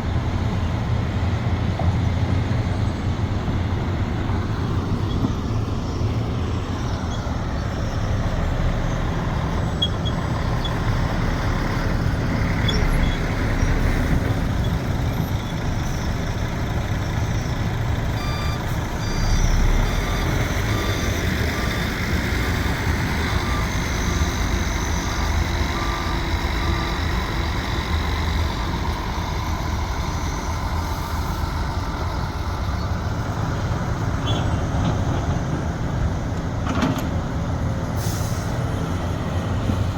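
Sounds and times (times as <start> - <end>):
heavy diesel engine running: 0.0 - 39.9
electronic warning beep: 18.2 - 28.0.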